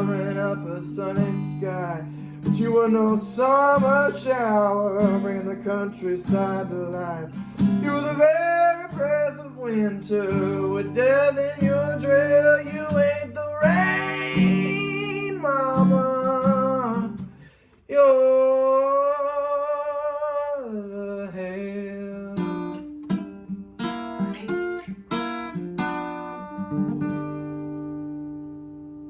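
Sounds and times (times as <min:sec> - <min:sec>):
acoustic guitar playing: 0:00.0 - 0:29.0
person singing long notes: 0:07.9 - 0:17.2.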